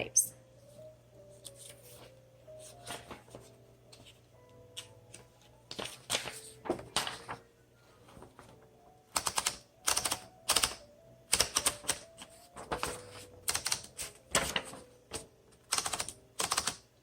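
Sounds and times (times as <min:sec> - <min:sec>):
manual typewriter typing: 0:09.1 - 0:16.9.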